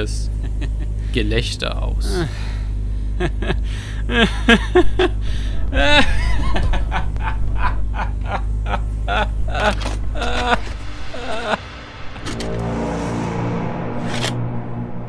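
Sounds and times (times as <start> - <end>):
steady low hum: 0.0 - 15.0
man laughing wildly: 0.3 - 1.0, 2.0 - 11.7.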